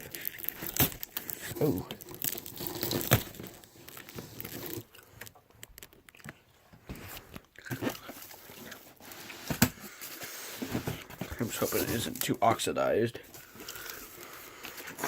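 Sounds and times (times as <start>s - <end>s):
cardboard box crunching: 0.0s - 5.0s
packaging rustling: 0.0s - 15.0s.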